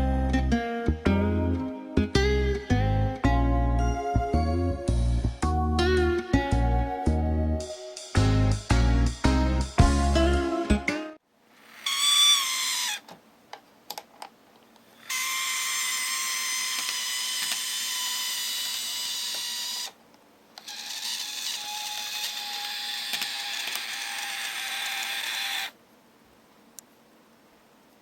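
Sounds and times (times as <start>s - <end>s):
model train motor whine: 11.6s - 13.0s, 15.0s - 20.0s, 20.6s - 25.8s.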